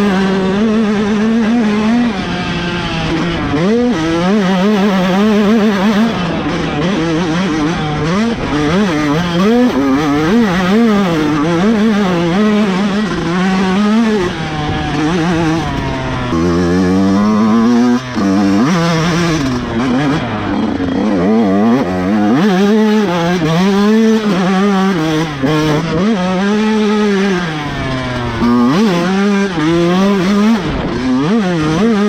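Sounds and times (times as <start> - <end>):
two-stroke motorcycle engine revving: 0.0 - 32.0.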